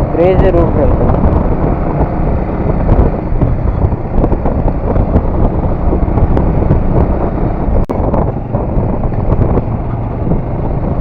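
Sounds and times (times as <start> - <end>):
motorcycle road and engine noise: 0.0 - 11.0
wind rushing over microphone: 0.0 - 11.0.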